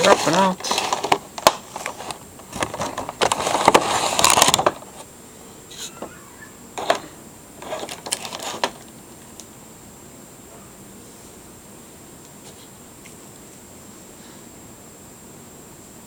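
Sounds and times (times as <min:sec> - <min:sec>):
cardboard packaging scraping: 0:00.0 - 0:05.0, 0:06.8 - 0:08.8.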